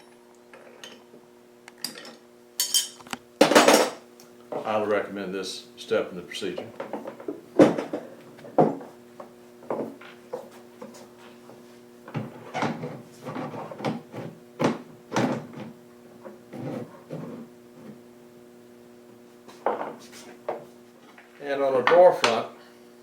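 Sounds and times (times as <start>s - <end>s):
faint electrical hum: 0.0s - 23.0s
objects knocking on workbench: 6.8s - 10.5s, 12.1s - 15.7s, 19.5s - 20.7s.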